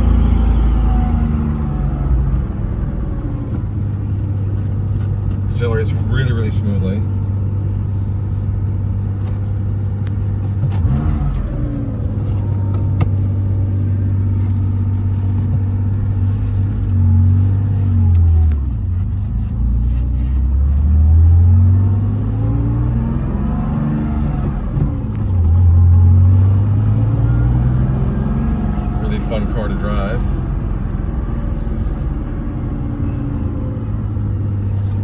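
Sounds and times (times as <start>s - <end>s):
car engine accelerating: 0.0s - 35.0s.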